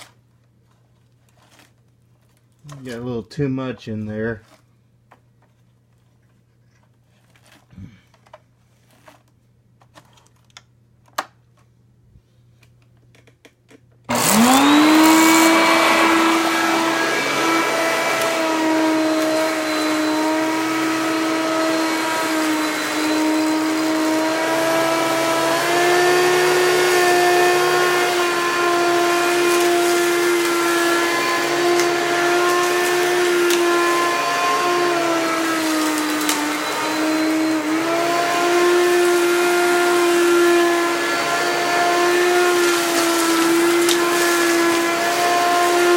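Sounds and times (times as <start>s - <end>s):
vacuum cleaner motor whine: 14.1s - 45.9s.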